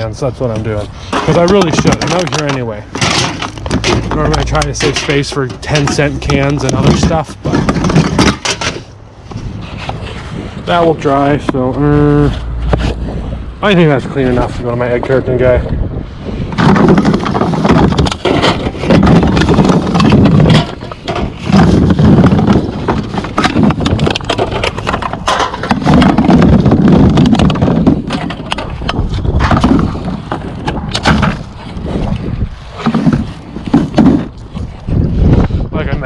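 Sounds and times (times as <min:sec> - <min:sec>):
wind buffeting microphone: 0:00.0 - 0:36.0
sharp clicks and knocks: 0:00.5 - 0:09.0, 0:16.5 - 0:34.6.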